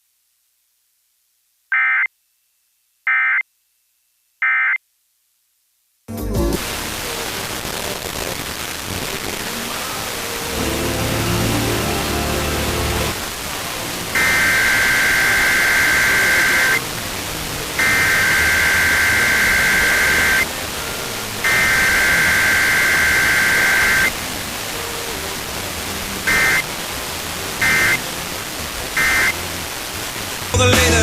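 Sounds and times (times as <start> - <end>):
radio hiss: 6.6 - 31.0
harsh buzzing data bursts: 13.8 - 17.1, 17.7 - 24.2, 26.0 - 30.6.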